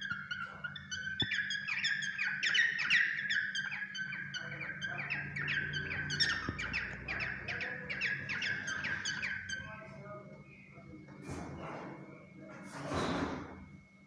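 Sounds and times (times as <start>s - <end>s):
bird chirping and whistling: 0.0s - 9.8s.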